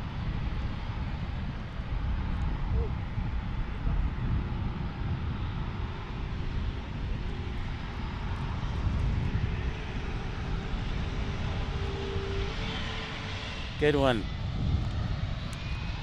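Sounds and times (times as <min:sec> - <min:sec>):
jet engines rumbling: 0:00.0 - 0:16.0
rising engine whine: 0:00.0 - 0:16.0.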